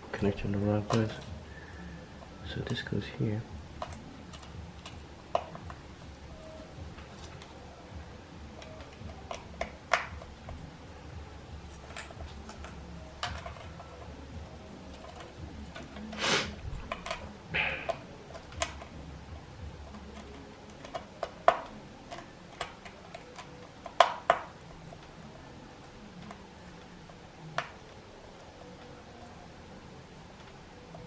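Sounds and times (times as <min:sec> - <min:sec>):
small tools clicking and tapping: 0:03.8 - 0:05.8, 0:08.6 - 0:10.7, 0:11.6 - 0:14.2, 0:14.8 - 0:16.2, 0:16.8 - 0:19.0, 0:19.8 - 0:29.4.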